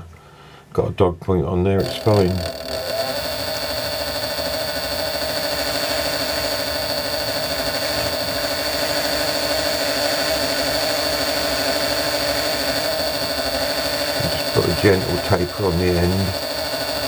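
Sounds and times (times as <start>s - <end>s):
lathe motor humming with whine: 1.8s - 17.0s.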